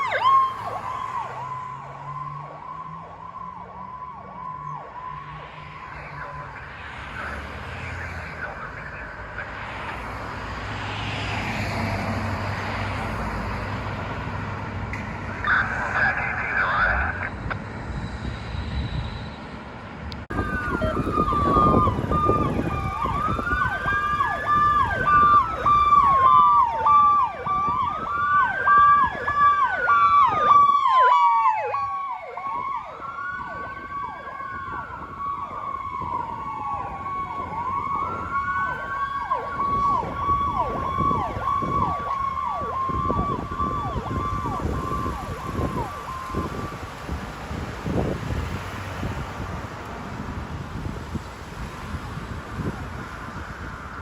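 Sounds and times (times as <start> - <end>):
steady broken siren tone: 0.0 - 11.8, 14.9 - 19.6, 20.3 - 47.2
siren yelp sweeps: 0.0 - 13.6, 15.2 - 19.5, 20.3 - 47.2
siren slow wail: 0.0 - 19.5, 20.2 - 49.2
traffic noise: 0.0 - 54.0.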